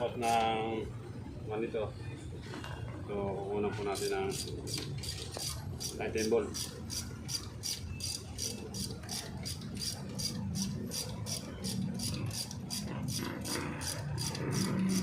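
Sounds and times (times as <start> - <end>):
clatter of engine work: 7.6 - 15.0.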